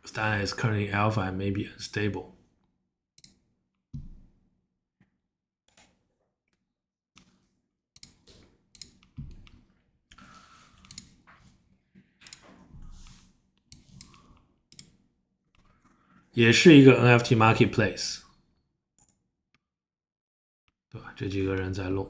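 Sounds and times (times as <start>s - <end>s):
computer mouse clicks: 8.0s - 11.2s, 12.2s - 15.0s.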